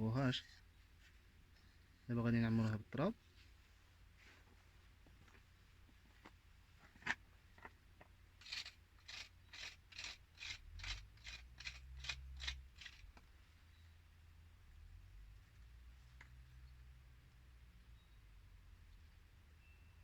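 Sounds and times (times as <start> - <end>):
soil scraping strokes: 8.4 - 13.2.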